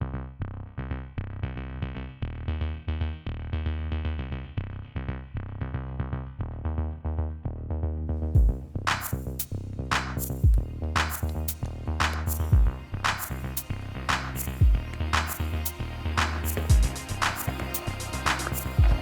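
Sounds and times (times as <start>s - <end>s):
electronic music with drum-machine beat: 10.2s - 19.0s.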